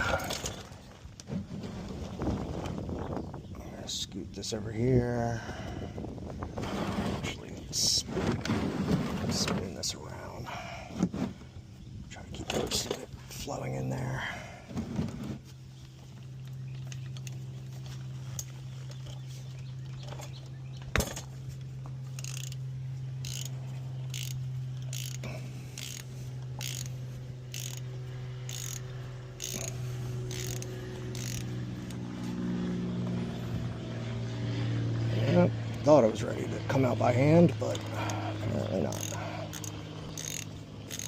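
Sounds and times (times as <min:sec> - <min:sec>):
steady low hum: 0:00.0 - 0:41.0
ratchet wrench clicking: 0:22.2 - 0:22.6, 0:23.2 - 0:32.0, 0:38.8 - 0:41.0.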